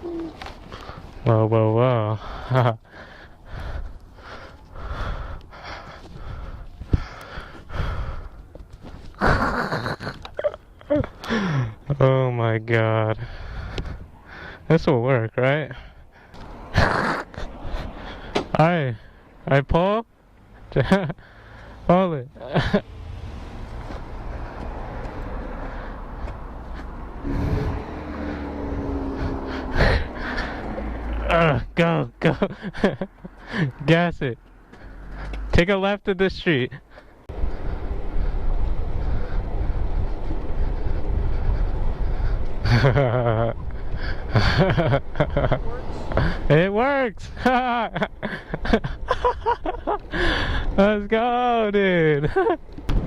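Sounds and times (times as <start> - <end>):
heavy breathing: 0.0 - 1.2, 2.0 - 10.2, 10.8 - 12.0, 13.1 - 14.8, 15.6 - 19.4, 21.1 - 21.9, 23.6 - 31.8, 32.4 - 33.9, 34.5 - 35.5, 36.7 - 44.8, 45.8 - 46.5, 50.0 - 50.8
low street rumble: 0.0 - 53.0
vehicle engine hum: 15.7 - 35.7, 36.4 - 53.0.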